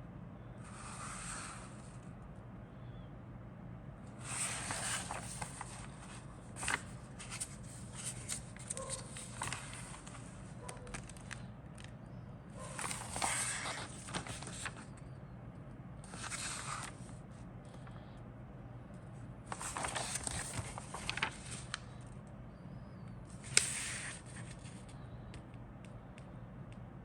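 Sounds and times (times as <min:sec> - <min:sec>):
low steady hum: 0:00.0 - 0:27.0
packaging rustling and crinkling: 0:04.5 - 0:11.9, 0:12.7 - 0:14.9, 0:19.5 - 0:21.8.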